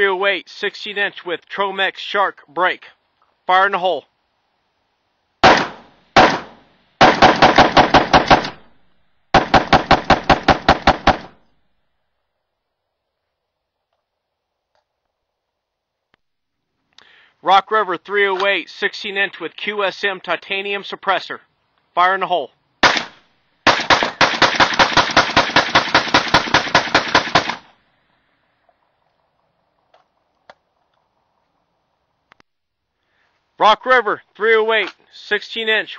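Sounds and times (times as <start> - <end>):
rifle shots: 5.4 - 11.4, 22.8 - 27.7
faint clicks: 32.3 - 32.5.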